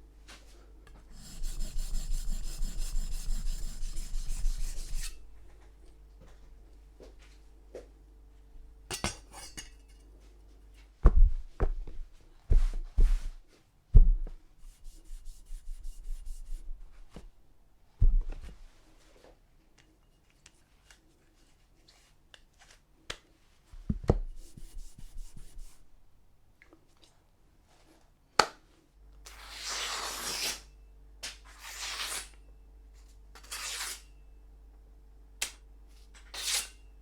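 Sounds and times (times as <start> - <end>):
knife fine scraping: 1.1 - 5.5, 8.9 - 9.7, 33.4 - 34.1.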